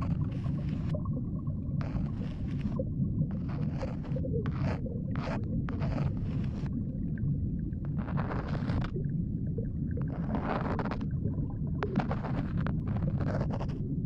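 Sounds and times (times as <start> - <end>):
continuous low rumble: 0.0 - 14.0
tool scraping at ear: 1.8 - 6.7, 7.9 - 8.9, 10.1 - 11.0, 11.8 - 13.8.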